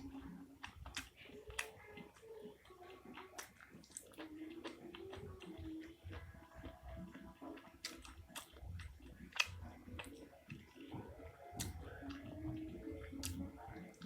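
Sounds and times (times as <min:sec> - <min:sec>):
wet chewing mouth noises: 0:00.0 - 0:14.0.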